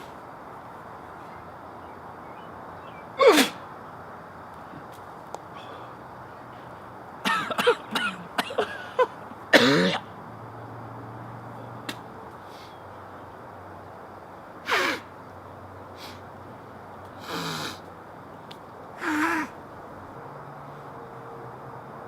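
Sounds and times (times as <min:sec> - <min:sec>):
man coughing: 0:07.2 - 0:10.0
man clearing his throat: 0:09.6 - 0:10.0.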